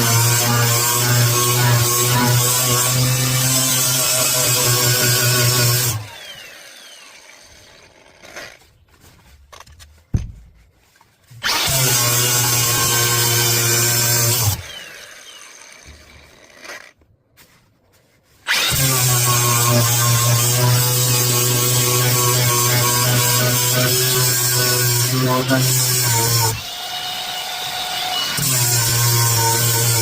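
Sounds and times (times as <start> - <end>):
grinder winding down: 0.0 - 8.6, 11.4 - 17.0, 18.5 - 30.0
angle grinder grinding: 0.0 - 8.8, 11.3 - 17.0, 18.4 - 30.0.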